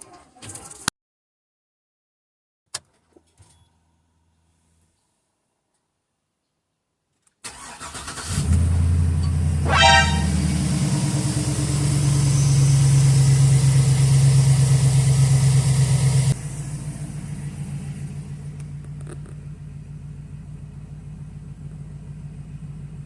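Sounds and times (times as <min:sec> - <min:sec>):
engine starting and idling: 0:07.4 - 0:23.0
high-pitched squeal: 0:09.6 - 0:10.7.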